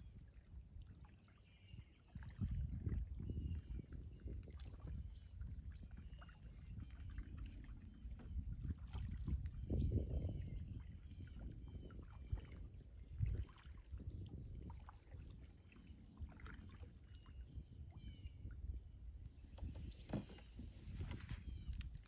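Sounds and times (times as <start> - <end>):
water movement around kayak hull: 0.0 - 22.0
wind rumbling on microphone: 2.1 - 22.0
faint knocks on plastic hull: 19.3 - 22.0
soft thumps: 19.4 - 22.0.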